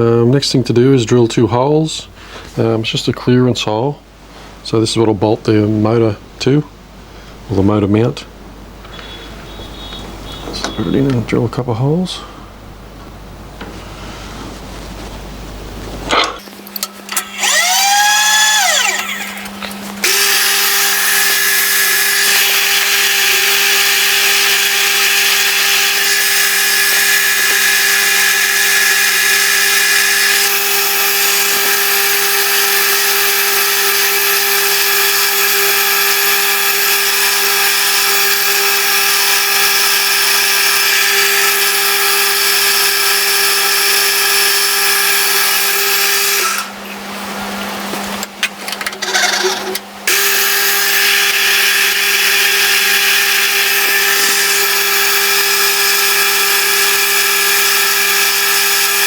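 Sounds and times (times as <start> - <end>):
drill machine whining: 8.8 - 12.7, 16.1 - 47.0, 48.8 - 59.0
drill cutting hiss: 8.9 - 11.1, 17.1 - 46.8, 49.0 - 59.0.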